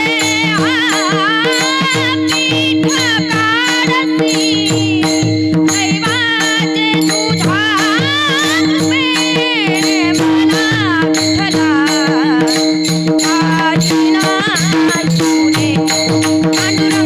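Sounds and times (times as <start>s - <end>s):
woman singing devotional melody: 0.0s - 17.0s.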